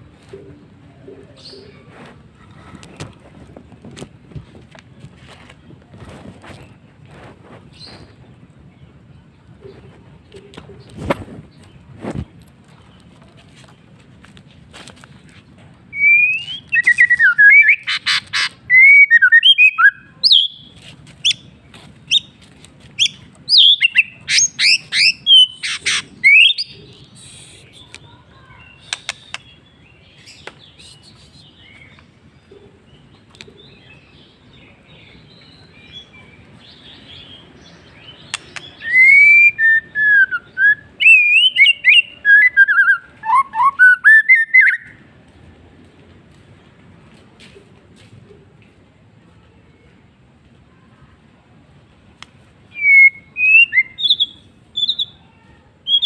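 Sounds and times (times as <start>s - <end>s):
bird clicking notes: 28.8s - 29.5s, 38.3s - 39.1s.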